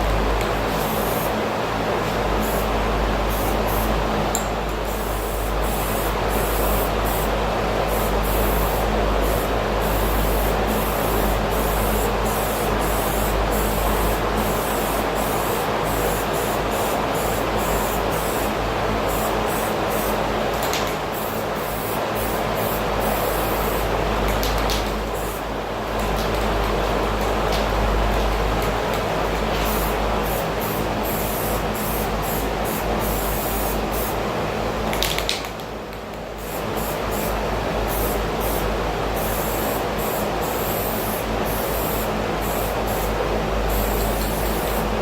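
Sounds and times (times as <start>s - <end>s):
spray paint hissing: 0.6s - 1.4s, 2.4s - 2.7s, 3.3s - 4.0s, 4.8s - 20.2s, 21.1s - 24.0s, 29.6s - 34.2s, 36.4s - 45.0s.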